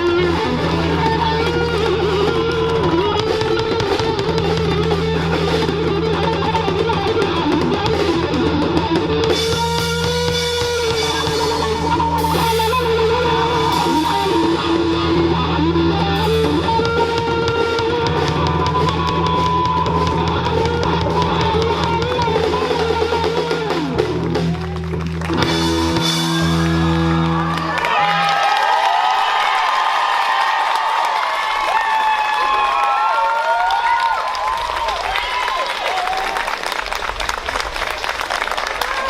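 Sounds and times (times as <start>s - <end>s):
drum kit: 0.0s - 28.2s
distorted electric guitar: 0.0s - 28.4s
bass guitar: 0.0s - 28.8s
guitar lead line: 0.0s - 28.8s.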